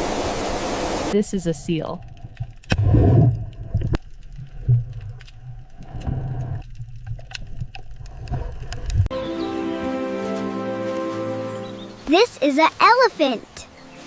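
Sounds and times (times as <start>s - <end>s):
music with held tones: 9.1s - 12.1s.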